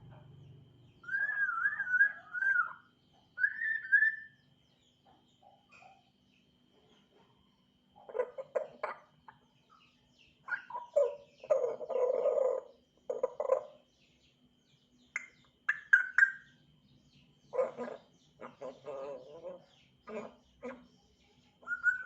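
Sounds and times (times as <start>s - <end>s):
parrot calling: 1.0s - 4.4s, 8.0s - 9.1s, 10.5s - 13.8s, 17.5s - 20.9s, 21.6s - 22.0s
parrot high whistles: 1.1s - 2.8s.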